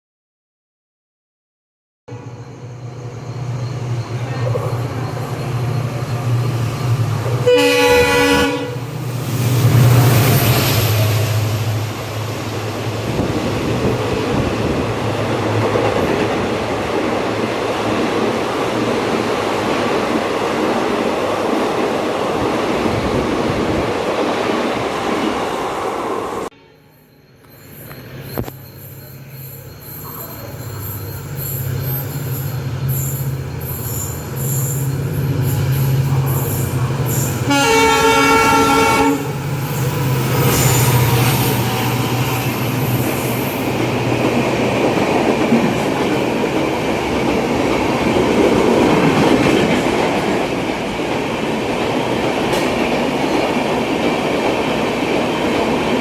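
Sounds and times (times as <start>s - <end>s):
train wheels on rails: 2.8s - 26.5s, 27.4s - 56.0s
train horn: 7.4s - 8.9s, 26.4s - 27.0s, 37.4s - 39.4s.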